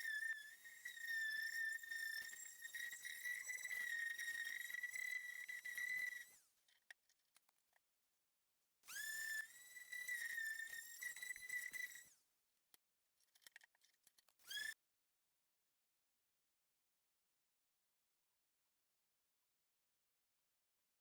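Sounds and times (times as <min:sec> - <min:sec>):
high-pitched power tool motor whine: 0:00.0 - 0:06.4, 0:08.9 - 0:12.1.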